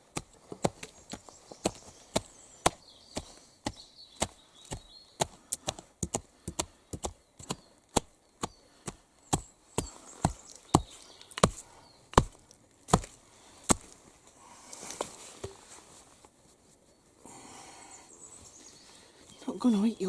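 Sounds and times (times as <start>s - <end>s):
axe chopping wood: 0.0s - 14.0s.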